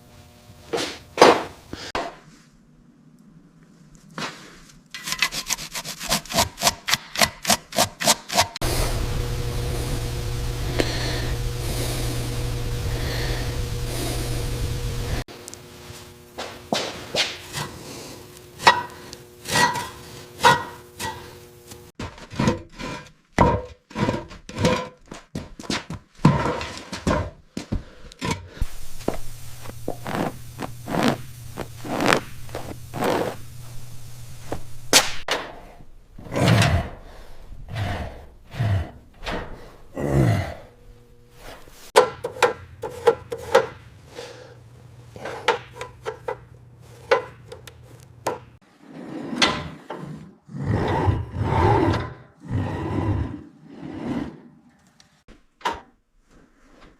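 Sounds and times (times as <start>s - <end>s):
tools knocking and scraping: 5.0s - 8.6s, 18.6s - 21.3s, 41.5s - 44.0s, 45.1s - 48.6s
low steady hum: 8.6s - 16.7s, 28.6s - 36.2s, 39.6s - 41.9s.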